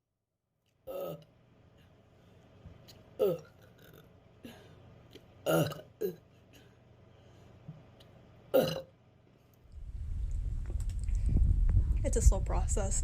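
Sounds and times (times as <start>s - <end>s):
woman burping: 0.9s - 1.3s, 3.2s - 4.6s, 5.4s - 6.3s, 8.5s - 8.9s.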